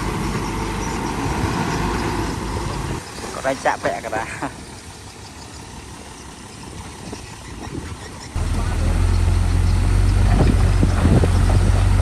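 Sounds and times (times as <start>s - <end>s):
diesel engine running: 0.0s - 3.0s, 8.4s - 12.0s.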